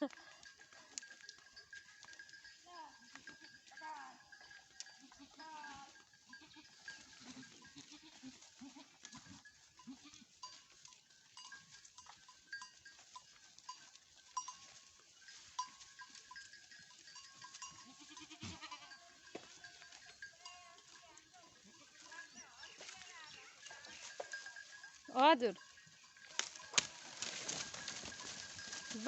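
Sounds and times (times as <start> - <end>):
goat bleating: 2.7 - 10.3, 17.6 - 24.2.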